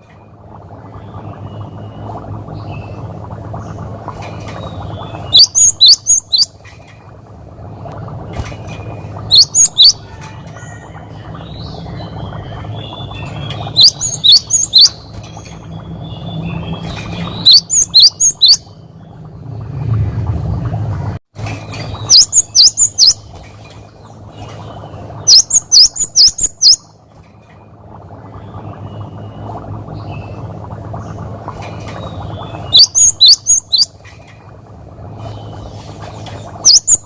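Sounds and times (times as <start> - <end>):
steady low hum: 0.0 - 37.0
bird singing high whistled notes: 17.4 - 18.6.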